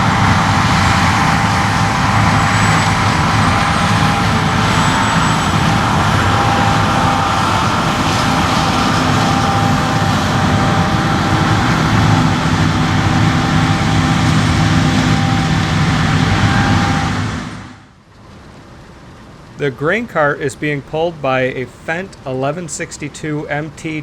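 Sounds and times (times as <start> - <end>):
thin machine whine: 0.0 - 18.0
diesel engines rumbling: 0.0 - 24.0.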